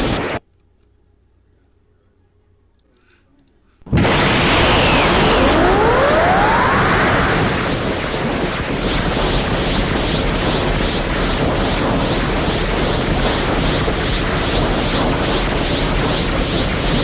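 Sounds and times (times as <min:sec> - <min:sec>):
loud dense rushing noise: 0:00.0 - 0:00.4, 0:03.9 - 0:17.0
rising whistling glides: 0:03.9 - 0:17.0.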